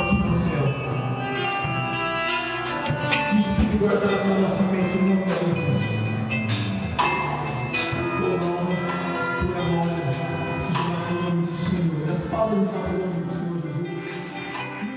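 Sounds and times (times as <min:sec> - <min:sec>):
worship band music: 0:00.0 - 0:14.9
cymbal hits: 0:05.3 - 0:11.1.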